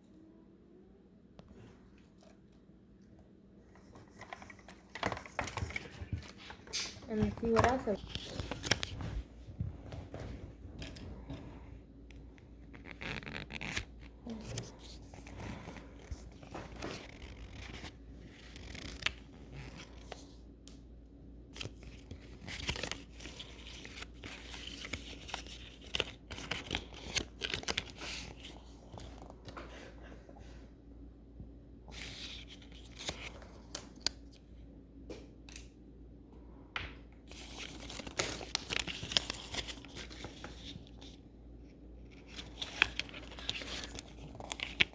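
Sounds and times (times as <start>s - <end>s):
plastic wrappers tearing and crinkling: 37.3s - 41.1s, 42.1s - 44.9s.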